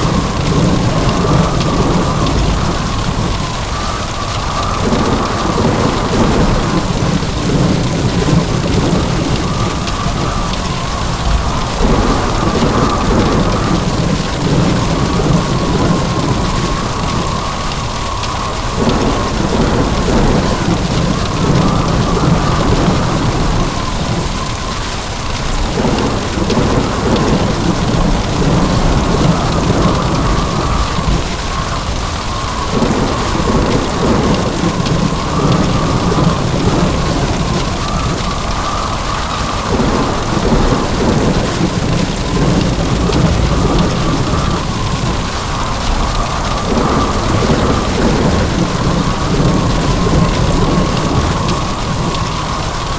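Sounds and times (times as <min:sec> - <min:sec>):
heavy rain pouring: 0:00.0 - 0:52.9
low thunder rumbles: 0:00.0 - 0:52.9.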